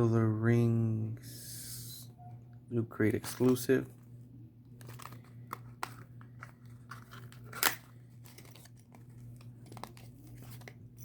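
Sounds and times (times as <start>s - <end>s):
packaging crinkling and tearing: 4.8s - 11.0s.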